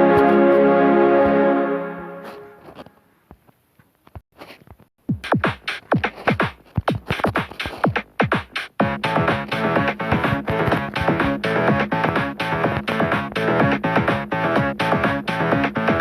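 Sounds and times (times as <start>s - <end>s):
electronic music: 0.0s - 2.6s, 8.8s - 16.0s
drum machine hits: 5.0s - 16.0s.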